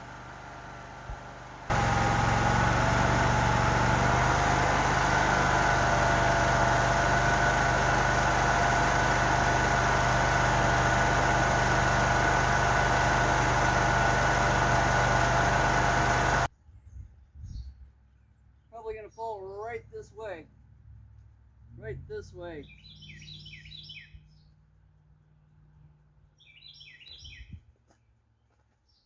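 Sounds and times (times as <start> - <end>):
construction machine engine running: 0.0 - 16.5.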